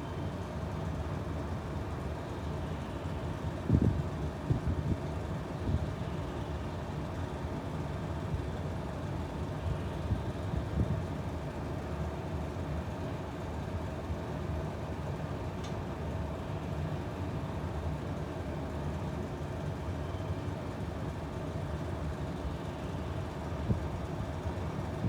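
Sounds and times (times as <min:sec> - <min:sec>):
train rumble from inside: 0:00.0 - 0:25.0
faint tick: 0:15.6 - 0:15.8.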